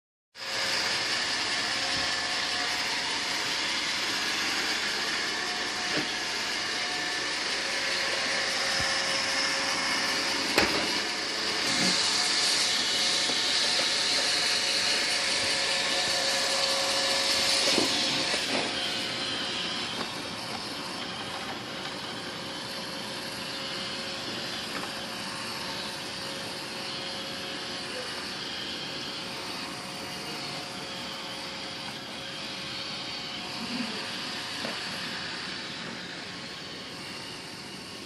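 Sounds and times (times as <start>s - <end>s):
robot vacuum whirring: 0.4s - 38.0s.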